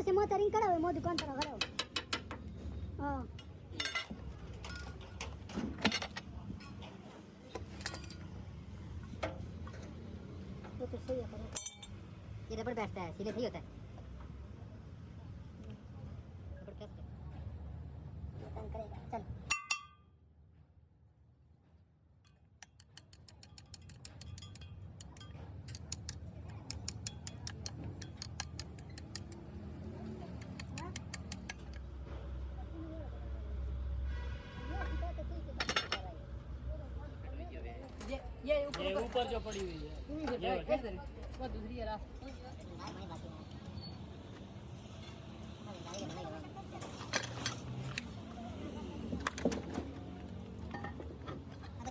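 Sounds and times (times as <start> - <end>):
metal parts clinking: 3.8 - 6.8, 11.5 - 12.0, 46.8 - 48.2
ratchet wrench clicking: 22.6 - 29.5.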